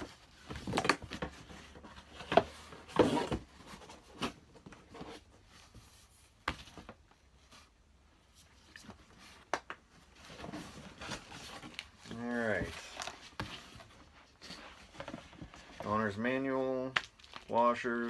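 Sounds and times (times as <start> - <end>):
cardboard packaging rustling: 0.0 - 18.0.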